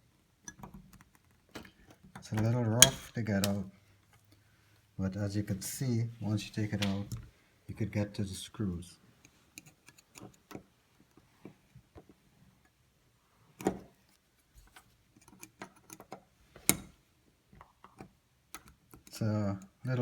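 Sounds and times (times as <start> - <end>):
small clicks and taps on lock: 17.9 - 19.2.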